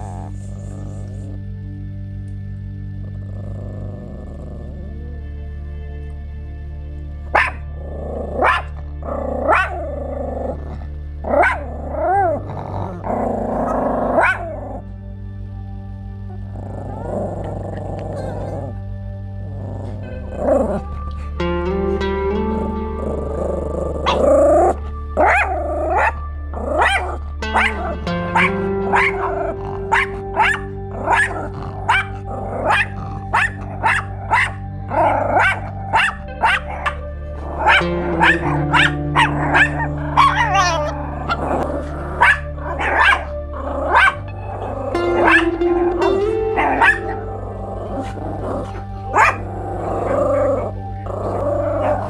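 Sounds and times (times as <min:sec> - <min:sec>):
background music of held chords: 0:00.0 - 0:52.0
small dogs barking sharply: 0:07.4 - 0:07.6, 0:08.4 - 0:08.8, 0:09.5 - 0:09.8, 0:26.8 - 0:34.6, 0:35.4 - 0:37.0, 0:37.6 - 0:41.0, 0:42.2 - 0:43.3.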